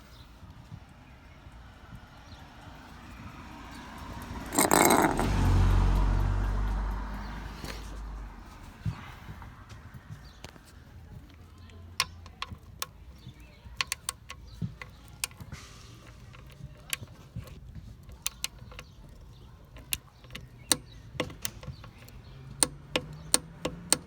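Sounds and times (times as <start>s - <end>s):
tools and metal parts clicking: 3.8s - 5.7s, 11.3s - 24.0s.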